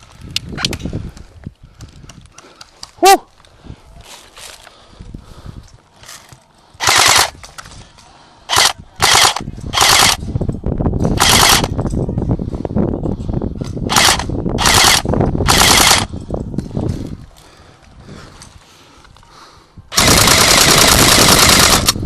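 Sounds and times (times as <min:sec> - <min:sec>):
airsoft rifle bursts: 0:06.8 - 0:07.4, 0:08.5 - 0:10.2, 0:11.2 - 0:11.7, 0:13.9 - 0:16.1, 0:19.9 - 0:22.0.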